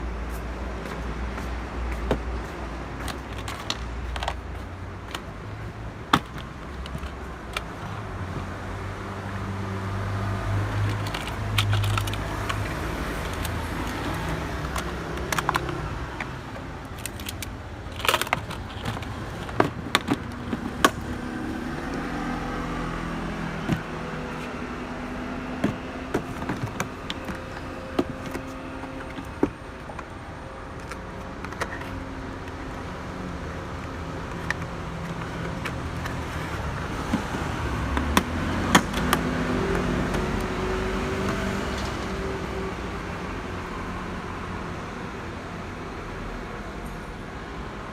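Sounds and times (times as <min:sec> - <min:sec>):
plastic box latches clicking: 0:16.9 - 0:21.1, 0:25.5 - 0:30.1.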